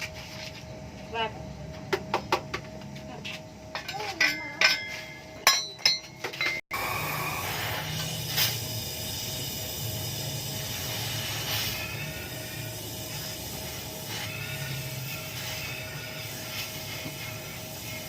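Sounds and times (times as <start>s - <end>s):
metal clinking and ringing: 3.7s - 6.6s.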